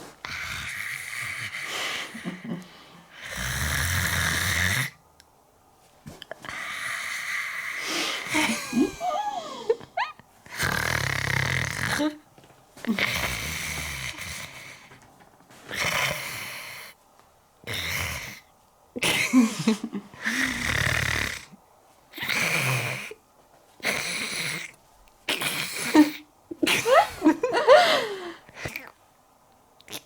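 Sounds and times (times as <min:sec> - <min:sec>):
comic snoring: 0:00.3 - 0:02.6, 0:03.2 - 0:05.0, 0:10.5 - 0:12.2, 0:13.0 - 0:14.9, 0:17.7 - 0:18.4, 0:20.2 - 0:21.6.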